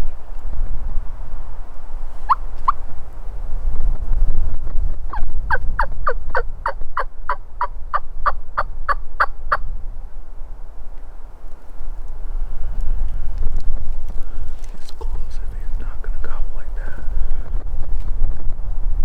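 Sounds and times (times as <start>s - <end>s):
low wind rumble: 0.0s - 19.0s
wild turkey yelps: 2.2s - 2.8s.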